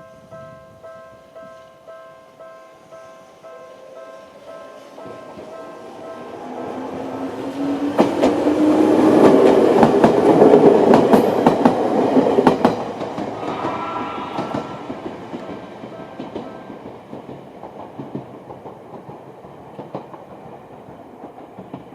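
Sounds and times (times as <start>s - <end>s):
crossing warning bell ringing: 0.0s - 6.8s
train wheels clacking over rail joints: 7.4s - 21.9s.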